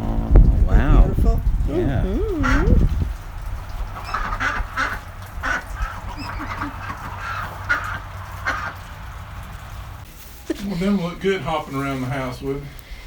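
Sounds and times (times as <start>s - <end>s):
ducks or geese quacking: 2.3s - 2.9s, 3.9s - 8.9s.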